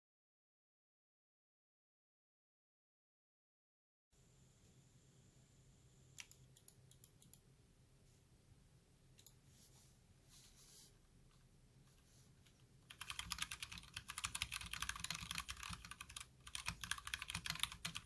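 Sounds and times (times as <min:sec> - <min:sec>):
low steady hum: 0:04.2 - 0:18.0
soft rustle: 0:09.4 - 0:12.7
mechanical keyboard clicks: 0:12.9 - 0:18.0.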